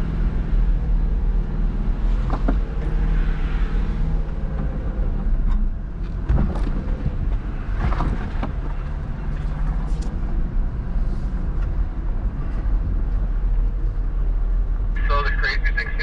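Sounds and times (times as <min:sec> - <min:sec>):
car engine running at low speed: 0:00.0 - 0:16.0
vehicle knocks and rattles: 0:02.0 - 0:03.2, 0:04.2 - 0:10.2.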